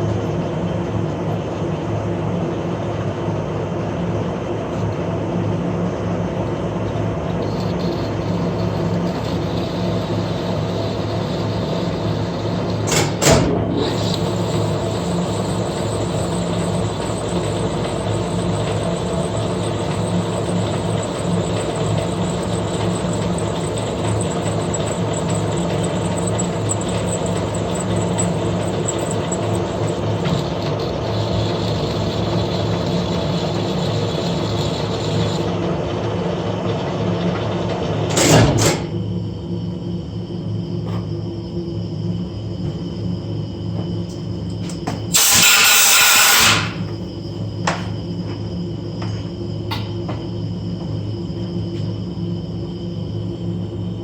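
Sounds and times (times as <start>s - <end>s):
metal lathe motor hum: 5.8s - 36.8s.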